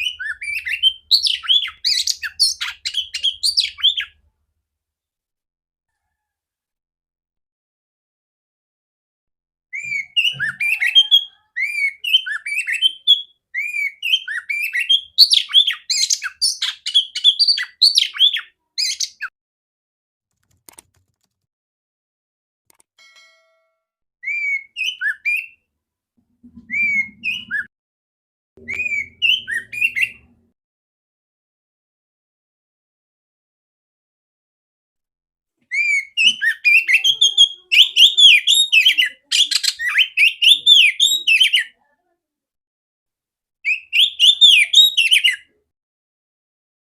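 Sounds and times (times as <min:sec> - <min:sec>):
bird whistled song: 0:00.0 - 0:04.2, 0:09.8 - 0:19.3, 0:24.2 - 0:25.6, 0:26.7 - 0:27.7, 0:28.6 - 0:30.4, 0:35.7 - 0:41.8, 0:43.7 - 0:45.5.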